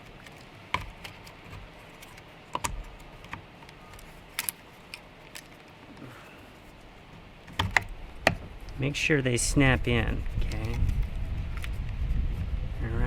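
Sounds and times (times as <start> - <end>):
sharp plastic clicks and knocks: 0.0 - 5.7, 7.5 - 8.5.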